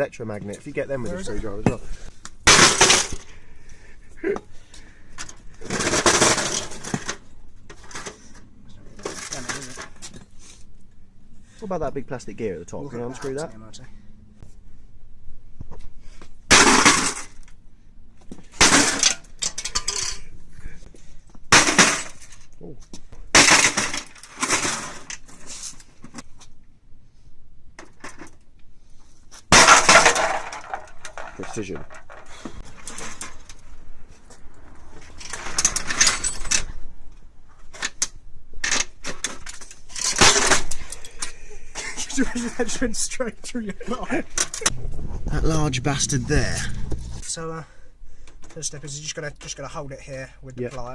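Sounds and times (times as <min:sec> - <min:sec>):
plastic parts clattering: 0:05.2 - 0:08.4, 0:23.4 - 0:25.8, 0:29.5 - 0:33.6, 0:37.7 - 0:42.5.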